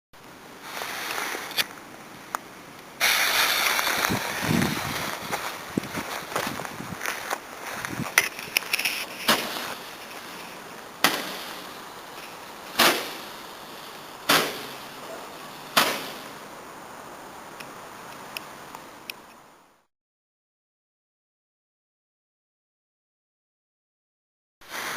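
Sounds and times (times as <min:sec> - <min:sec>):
faint crackles: 0:00.2 - 0:16.4
firework hiss: 0:00.6 - 0:01.6, 0:03.0 - 0:06.8, 0:07.6 - 0:17.1, 0:24.6 - 0:24.9
firework pops: 0:03.0 - 0:05.0, 0:08.1 - 0:09.8, 0:11.0 - 0:11.6, 0:12.7 - 0:13.3, 0:14.3 - 0:14.8, 0:15.8 - 0:16.3.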